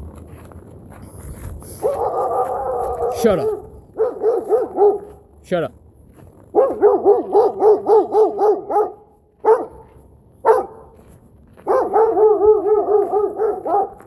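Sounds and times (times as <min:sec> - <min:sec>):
dog barking: 0:01.8 - 0:05.3, 0:06.5 - 0:14.0.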